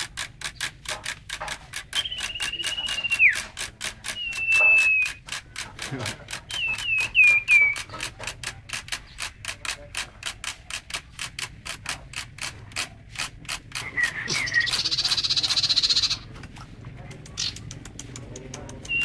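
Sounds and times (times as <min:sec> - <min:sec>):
songbird singing: 0:01.4 - 0:10.8, 0:13.4 - 0:19.0.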